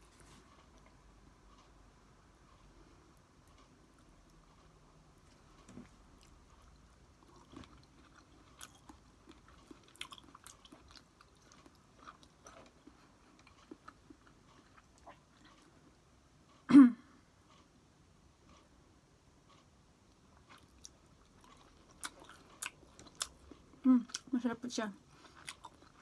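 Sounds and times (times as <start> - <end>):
chewing and crunching food: 2.5 - 16.6, 19.4 - 26.0.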